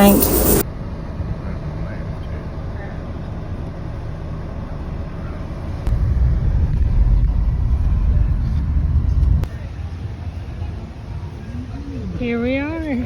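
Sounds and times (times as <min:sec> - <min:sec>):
low rumbling vehicle noise: 0:00.0 - 0:13.0.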